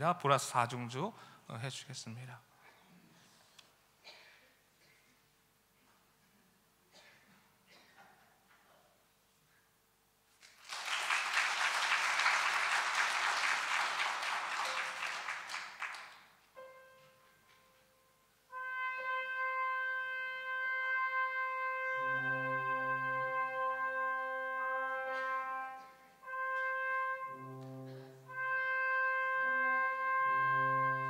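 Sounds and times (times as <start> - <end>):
applause: 10.4 - 16.4
brass quartet playing: 11.7 - 31.0.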